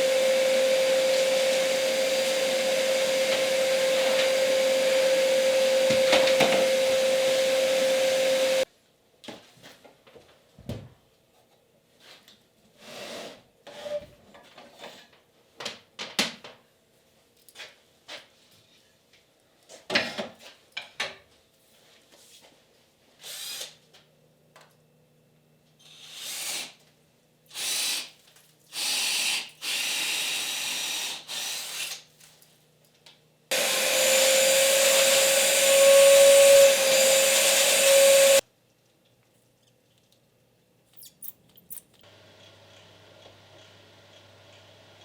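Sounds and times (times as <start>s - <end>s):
power tool running: 0.0s - 8.6s, 33.5s - 38.4s.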